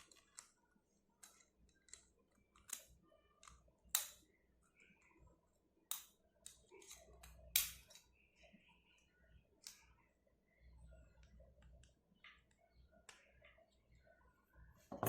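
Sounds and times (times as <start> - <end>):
small plastic parts clicking: 0.0 - 4.3.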